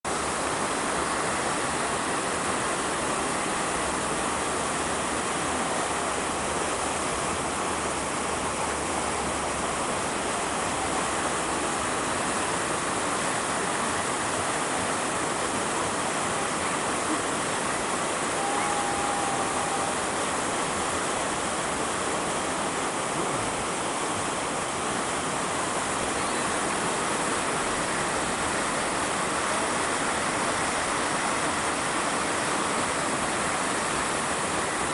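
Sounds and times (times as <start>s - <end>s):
rushing water: 0.0s - 34.9s
faint whistled note: 18.3s - 20.0s.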